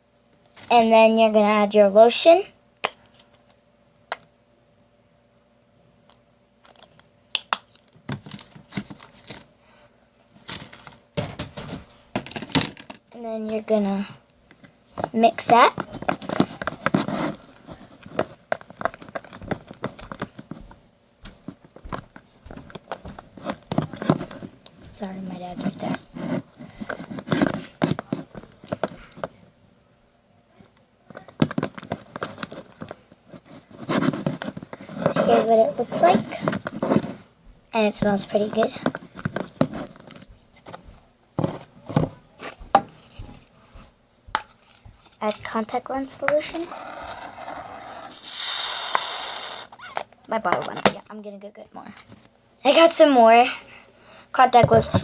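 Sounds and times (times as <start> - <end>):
stick stirring slime: 15.0 - 20.8.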